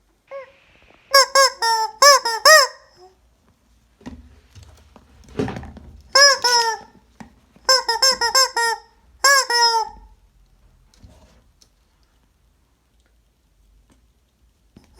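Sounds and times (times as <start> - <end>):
rubber chicken toy squealing: 1.1 - 3.1, 6.2 - 6.9, 7.7 - 10.1.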